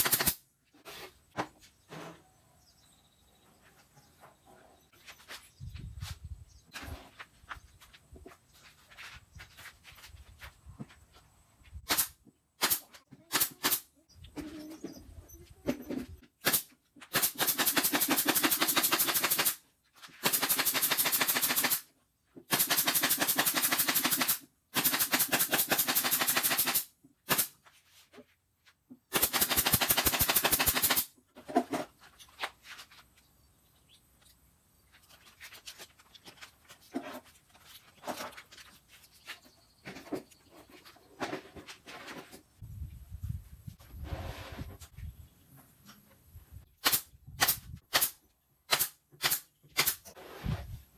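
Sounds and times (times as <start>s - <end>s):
parts being handled: 31.2s - 42.6s.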